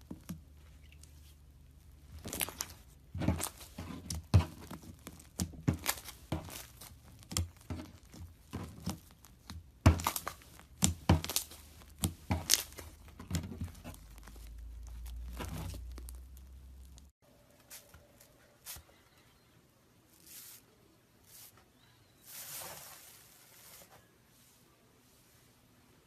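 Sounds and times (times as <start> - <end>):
hardened slime crackling: 0.0 - 17.1.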